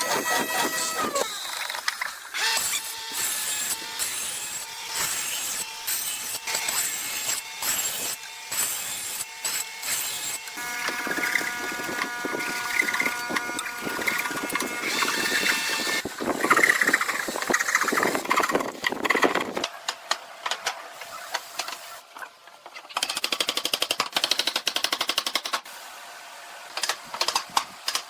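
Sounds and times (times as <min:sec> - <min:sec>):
motor whining: 0:00.0 - 0:08.1, 0:09.8 - 0:19.6
rough cutting or grinding: 0:00.0 - 0:19.6.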